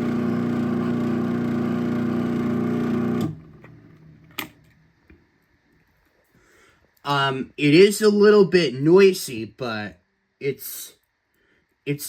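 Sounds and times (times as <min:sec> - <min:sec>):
garage door opener motor hum: 0:00.0 - 0:04.7.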